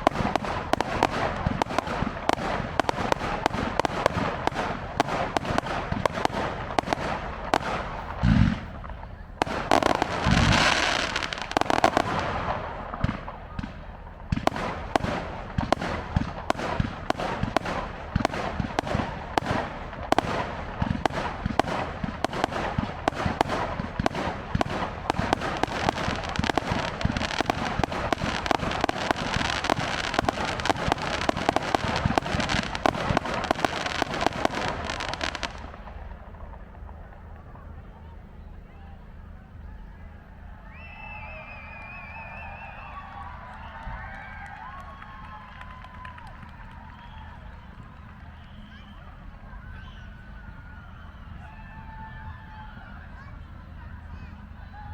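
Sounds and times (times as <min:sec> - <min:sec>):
firework booms: 0:00.0 - 0:38.2
fireworks crackling and popping: 0:00.0 - 0:39.9.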